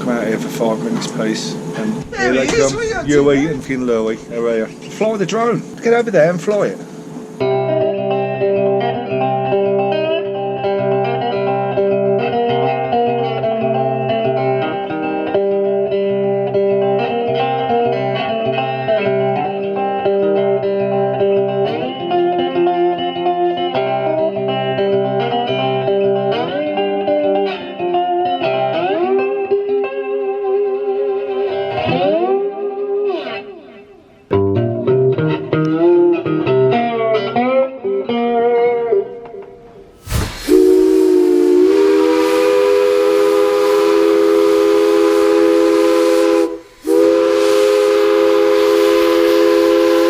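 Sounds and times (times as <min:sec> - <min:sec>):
guitar background music: 0:07.4 - 0:40.0.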